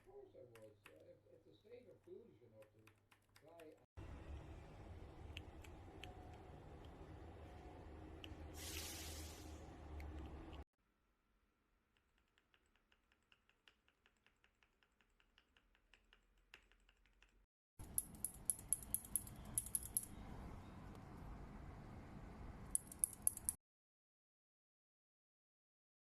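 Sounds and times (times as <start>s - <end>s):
steady hiss: 8.5s - 9.6s.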